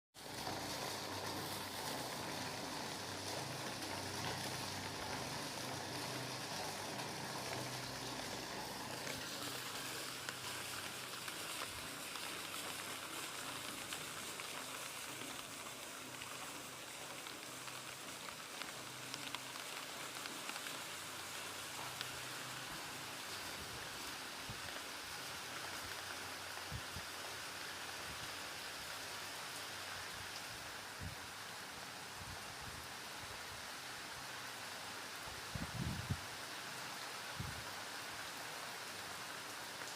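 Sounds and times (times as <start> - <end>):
rain falling: 0.2 - 39.9.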